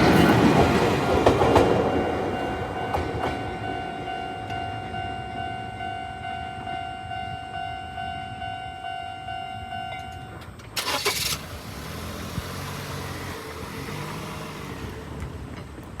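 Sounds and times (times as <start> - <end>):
level crossing warning alarm: 1.4 - 10.5
car engines moving off: 10.8 - 16.0.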